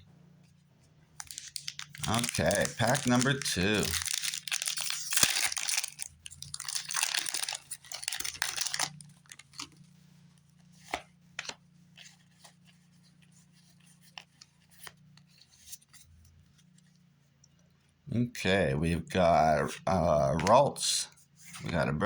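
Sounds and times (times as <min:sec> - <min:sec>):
cards clicking and tapping: 0:01.2 - 0:06.0
foil wrapper tearing and crinkling: 0:01.2 - 0:09.7.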